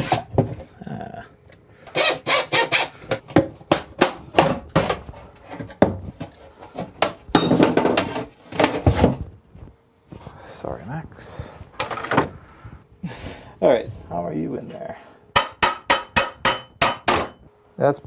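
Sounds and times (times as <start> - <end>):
hammer striking wood: 15.4 - 17.4.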